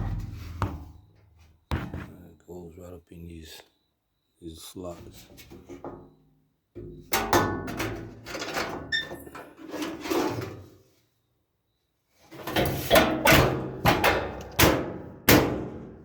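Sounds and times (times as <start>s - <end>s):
sheet metal knocking and rattling: 12.5s - 15.8s.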